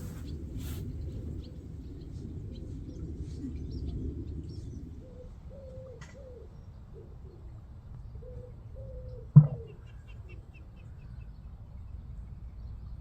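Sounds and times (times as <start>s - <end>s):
dove cooing: 4.9s - 7.5s, 8.2s - 9.8s.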